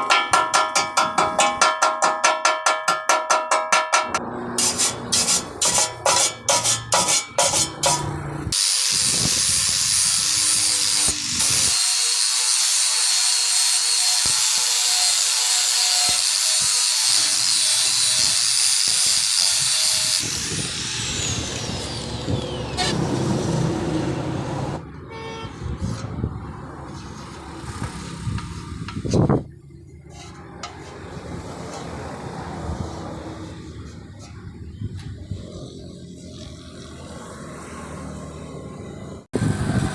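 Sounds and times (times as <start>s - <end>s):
angle grinder running: 7.5s - 23.0s
grinder winding down whine: 8.5s - 12.4s, 13.4s - 23.0s.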